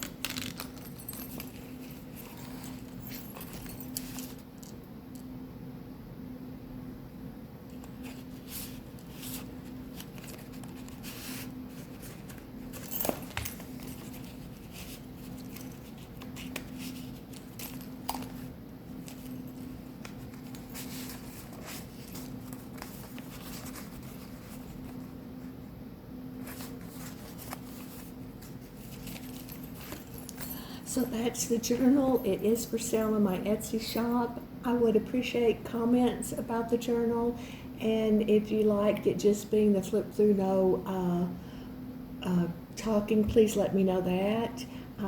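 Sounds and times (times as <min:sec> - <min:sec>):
paper pages rustling: 0:00.0 - 0:04.4, 0:07.8 - 0:25.1, 0:26.4 - 0:30.4
steady low hum: 0:00.0 - 0:45.0.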